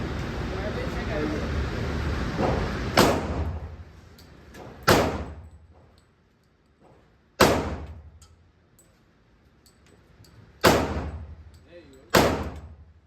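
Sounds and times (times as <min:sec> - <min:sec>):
gunshots with echo: 0:12.2 - 0:12.6.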